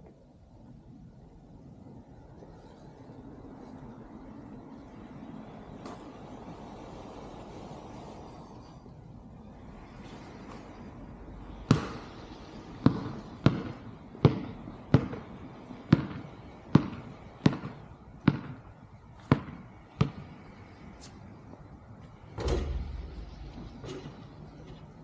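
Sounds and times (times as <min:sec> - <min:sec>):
basketball bouncing on pavement: 0:11.5 - 0:21.1, 0:22.3 - 0:25.0
low thud: 0:22.4 - 0:23.9.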